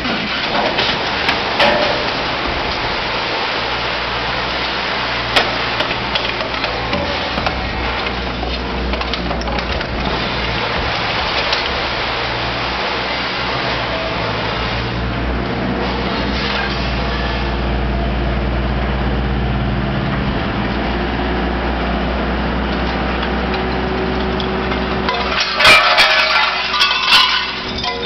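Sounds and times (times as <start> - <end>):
metal crackling and creaking: 0.0 - 14.8, 22.7 - 28.0.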